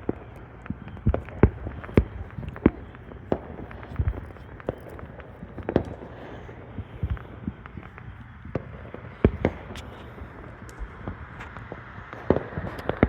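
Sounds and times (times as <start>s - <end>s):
deep fireworks thuds: 0.0s - 13.0s
fireworks booms and cracks: 0.0s - 13.0s.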